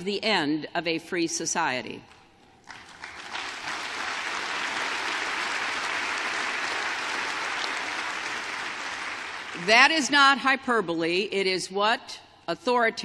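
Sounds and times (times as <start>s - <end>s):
large audience applauding: 2.6s - 9.7s.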